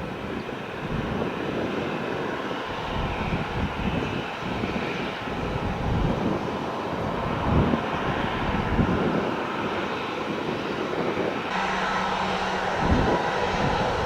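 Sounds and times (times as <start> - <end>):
jet engines running: 0.0 - 14.0.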